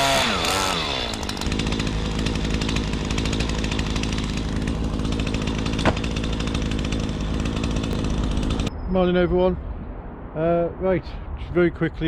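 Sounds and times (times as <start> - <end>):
chainsaw engine revving down to idle: 0.0 - 8.7.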